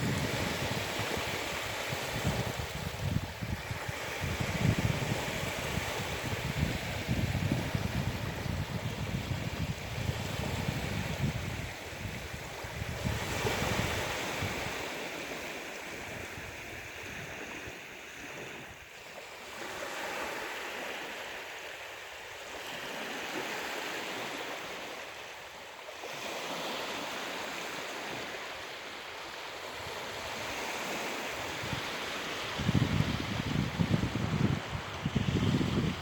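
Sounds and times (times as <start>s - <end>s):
ocean waves breaking on shore: 0.0s - 36.0s.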